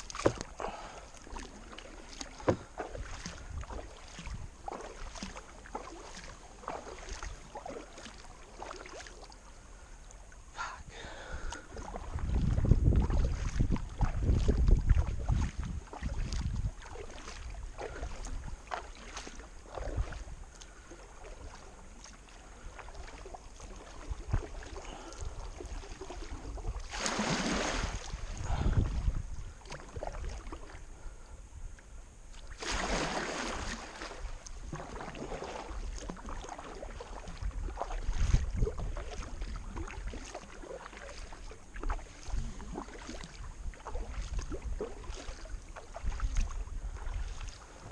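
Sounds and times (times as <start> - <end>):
paddle swishing water: 0.0 - 47.9
wind rumble on microphone: 2.4 - 5.4, 11.6 - 21.8, 22.6 - 32.1, 32.8 - 47.9.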